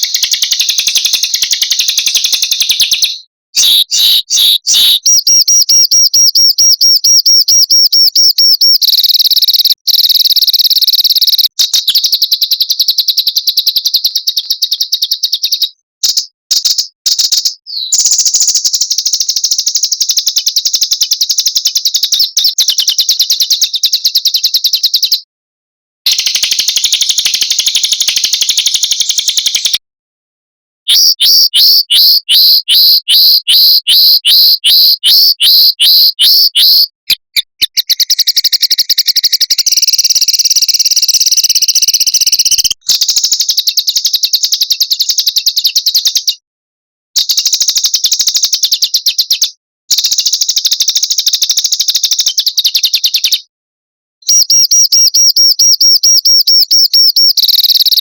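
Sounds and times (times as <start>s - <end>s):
songbirds singing trills: 0.0s - 25.3s, 30.9s - 46.4s.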